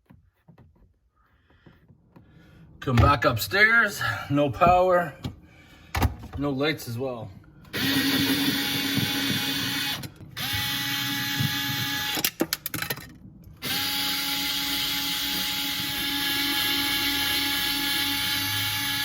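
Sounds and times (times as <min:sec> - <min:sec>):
cordless drill spinning: 0:07.7 - 0:12.3, 0:13.6 - 0:19.0
drill clicks: 0:07.7 - 0:12.7.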